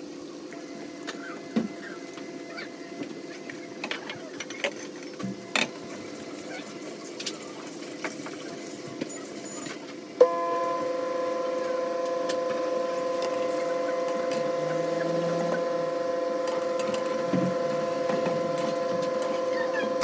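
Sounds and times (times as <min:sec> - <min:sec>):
steady machine hum: 0:10.0 - 0:20.0.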